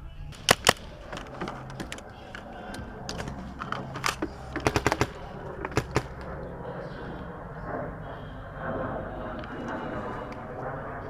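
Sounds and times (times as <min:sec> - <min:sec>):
paintball marker shots: 0:00.3 - 0:01.4, 0:04.0 - 0:06.3.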